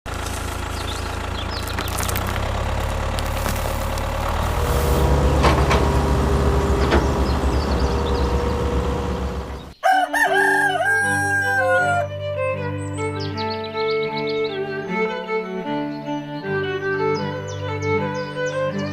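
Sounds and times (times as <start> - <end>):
low motor drone: 0.1 - 9.8
string music: 0.1 - 18.9
rooster crowing: 9.8 - 12.1.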